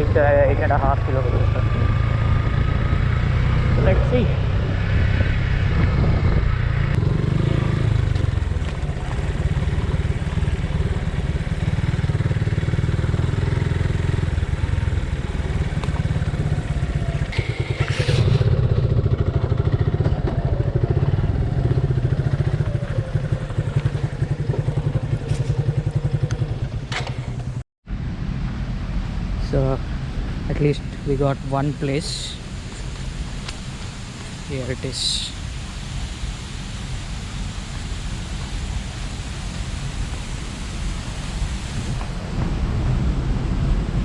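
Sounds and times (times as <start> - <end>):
motorcycle engine running: 0.0 - 29.4.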